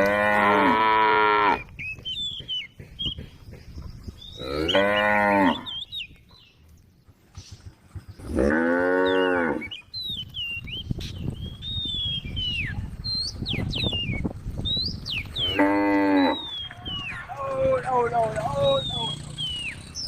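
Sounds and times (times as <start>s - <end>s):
cattle mooing: 0.0s - 1.7s, 4.4s - 5.7s, 8.2s - 9.7s, 15.4s - 16.5s.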